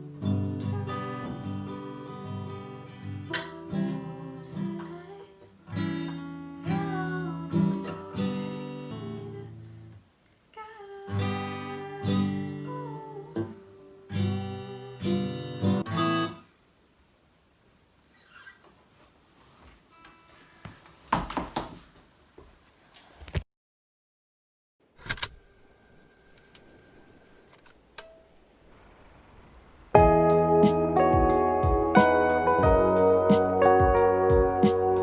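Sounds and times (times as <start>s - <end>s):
strummed acoustic guitar music: 0.0s - 9.3s, 11.2s - 16.4s, 30.0s - 35.0s.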